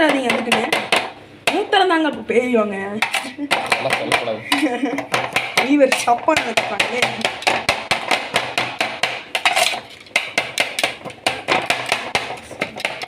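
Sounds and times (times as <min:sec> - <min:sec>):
knife chopping chicken: 0:03.5 - 0:13.0.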